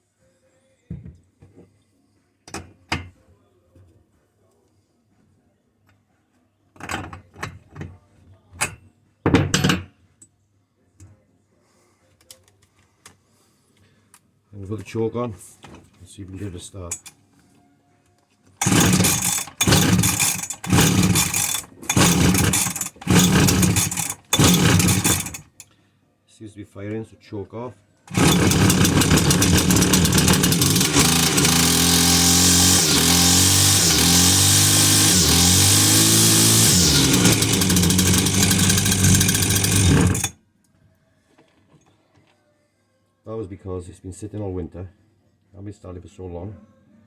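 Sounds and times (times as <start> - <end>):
pull starter: 16.9 - 17.1, 18.6 - 25.6, 28.1 - 40.3
brush cutter engine firing: 18.6 - 25.6, 28.1 - 40.3.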